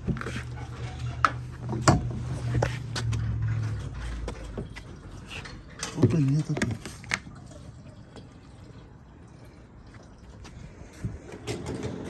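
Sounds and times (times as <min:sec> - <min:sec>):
low engine hum: 0:00.0 - 0:05.3.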